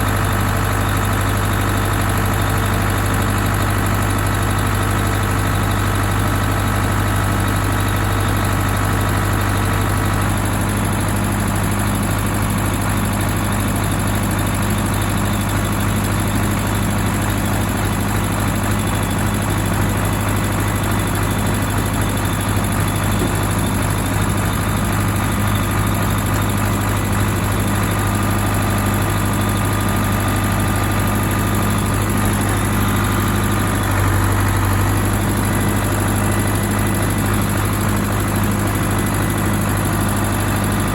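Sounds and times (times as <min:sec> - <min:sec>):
tractor diesel engine running: 0:00.0 - 0:40.9.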